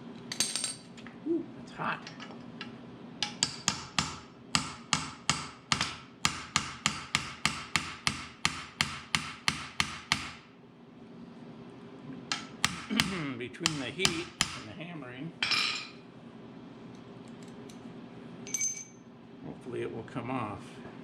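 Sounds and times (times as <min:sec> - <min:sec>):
hammer striking metal: 0:03.2 - 0:10.4, 0:12.3 - 0:14.7.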